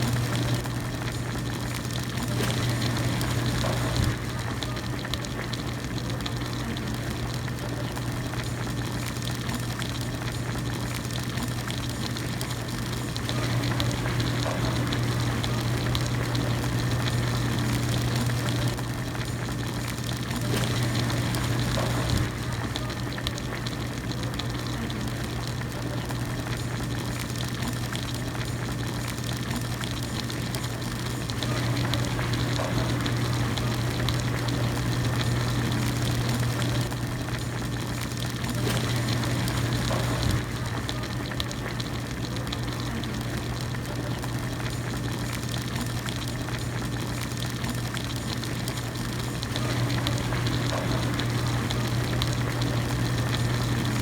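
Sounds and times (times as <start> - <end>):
broth bubbling at a boil: 0.0 - 54.0.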